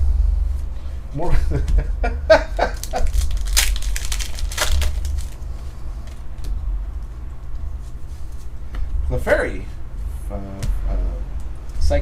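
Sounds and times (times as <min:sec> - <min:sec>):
steady low hum: 0:00.0 - 0:12.0
cards and foil rustling: 0:02.6 - 0:06.2.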